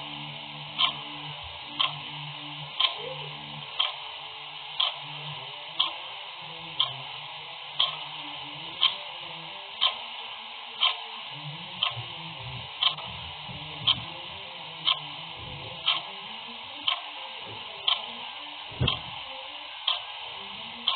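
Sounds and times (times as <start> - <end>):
faint steady hiss: 0.0 - 20.9
clock ticking: 0.1 - 4.1, 4.8 - 5.0, 5.8 - 6.0, 7.8 - 8.1, 8.8 - 9.0, 9.8 - 10.0, 10.8 - 11.0, 11.8 - 12.1, 12.8 - 13.2, 13.8 - 14.1, 14.8 - 15.2, 15.8 - 16.1, 16.8 - 17.1, 17.8 - 18.1, 18.7 - 19.2, 19.8 - 20.2.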